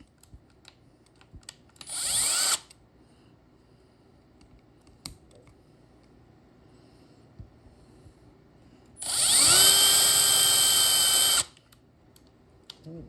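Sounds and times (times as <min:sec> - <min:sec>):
power drill whine: 0:01.8 - 0:02.7, 0:09.0 - 0:11.5.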